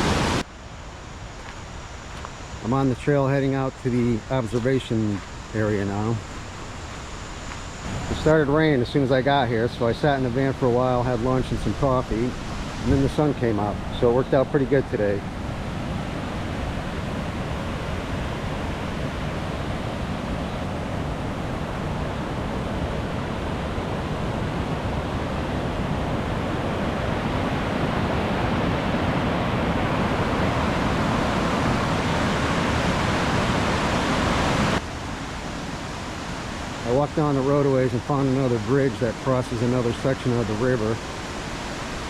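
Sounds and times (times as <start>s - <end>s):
river rapids rushing: 0.0s - 0.4s, 15.6s - 34.8s.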